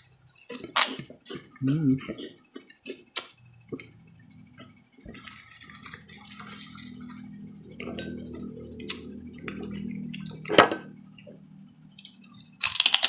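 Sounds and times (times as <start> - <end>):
person humming mm: 1.6 - 2.2.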